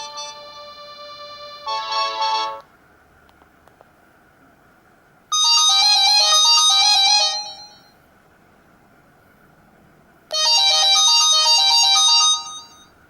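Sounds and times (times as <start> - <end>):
electronic ringtone melody: 0.0 - 2.6, 5.3 - 7.9, 10.3 - 12.9.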